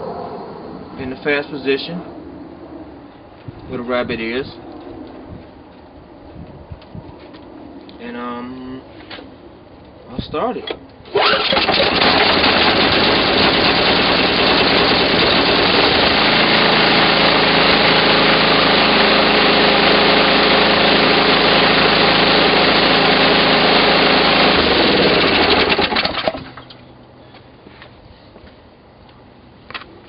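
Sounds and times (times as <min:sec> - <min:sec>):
snow blower engine running: 0:11.1 - 0:26.6
engine winding down: 0:11.1 - 0:26.7.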